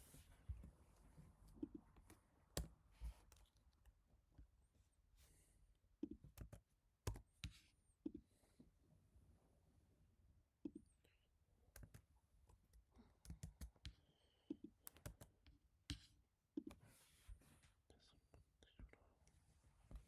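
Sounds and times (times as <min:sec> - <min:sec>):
soft keyboard keystrokes: 0:01.7 - 0:04.0, 0:06.1 - 0:07.3, 0:11.7 - 0:16.0.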